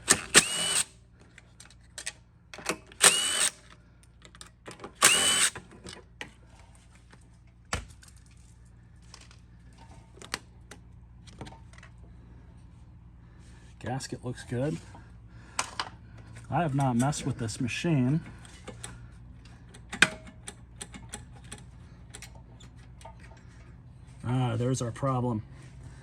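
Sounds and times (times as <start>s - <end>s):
small power tool whirring: 0.0s - 0.9s, 3.0s - 3.7s, 5.0s - 5.7s
clicks and knocks of parts: 0.0s - 6.3s, 18.4s - 23.5s.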